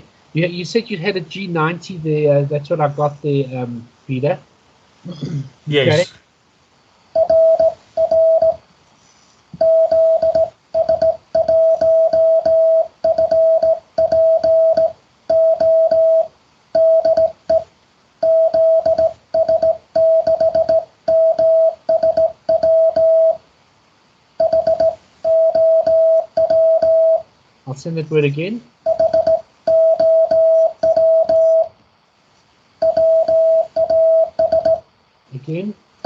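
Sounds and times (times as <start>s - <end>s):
morse code beeps: 7.2s - 8.6s, 9.6s - 23.4s, 24.4s - 27.3s, 28.8s - 31.8s, 32.8s - 34.9s.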